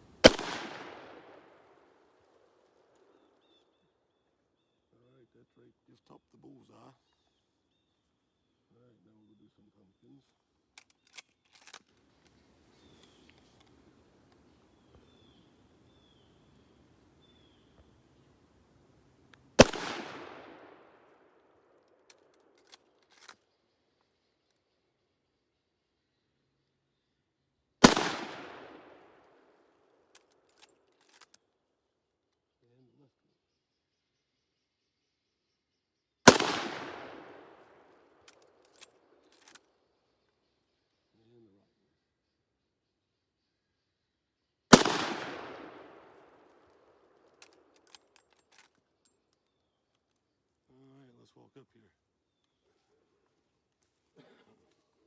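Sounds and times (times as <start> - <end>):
rifle shot: 0.2 - 2.1, 19.6 - 21.3, 27.8 - 29.5, 36.3 - 39.6, 44.7 - 46.8
faint clicks: 10.2 - 15.1
rifle lever clicks: 10.8 - 11.9, 22.1 - 23.4, 30.2 - 31.4, 38.3 - 39.7.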